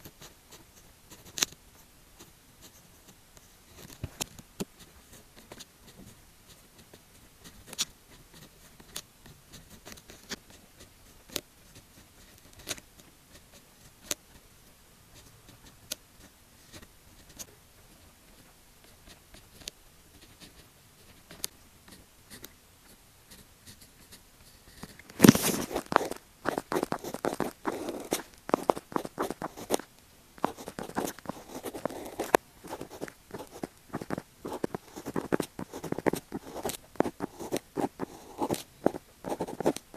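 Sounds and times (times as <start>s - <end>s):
pen scratching on paper: 4.8s - 14.2s, 18.8s - 39.9s.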